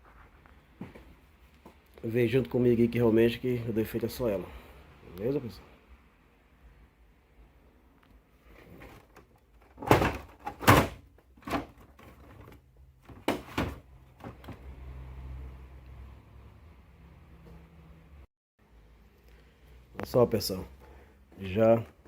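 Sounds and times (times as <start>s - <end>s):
plastic printer covers knocking shut: 9.8s - 12.1s, 13.1s - 14.5s.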